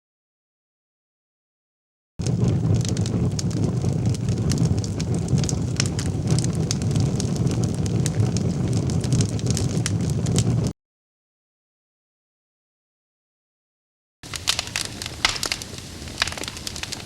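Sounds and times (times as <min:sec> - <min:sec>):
fire burning: 0:02.2 - 0:10.7, 0:14.2 - 0:17.0
fire crackling and popping: 0:02.2 - 0:10.7, 0:14.2 - 0:17.0.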